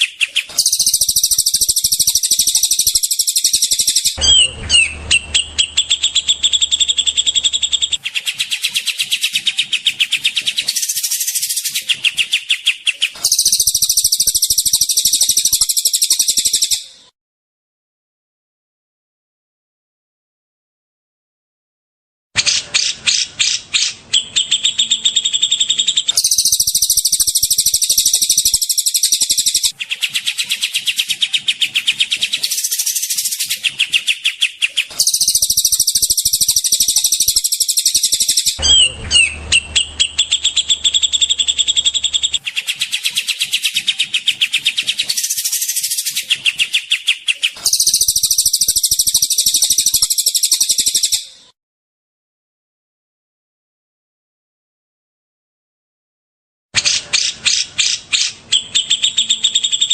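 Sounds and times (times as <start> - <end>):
songbird fast trills: 0.0 - 17.0, 22.6 - 51.5.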